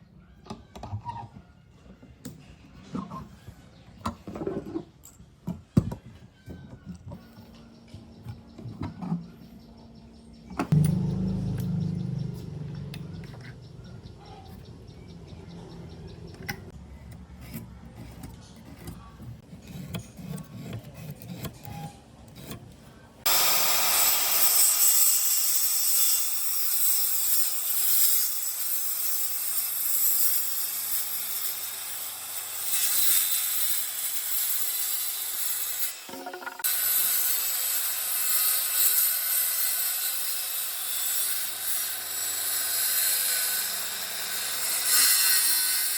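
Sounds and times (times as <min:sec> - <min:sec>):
tool scraping on wood: 0:16.9 - 0:23.0.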